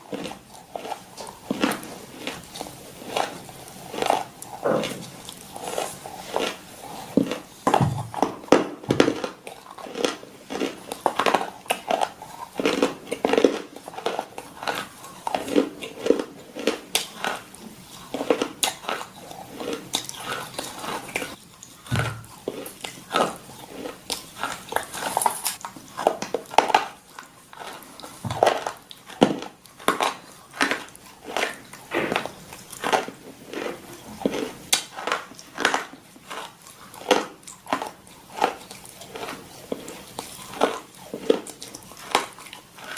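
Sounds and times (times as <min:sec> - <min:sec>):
dog crunching food: 0:00.0 - 0:42.9.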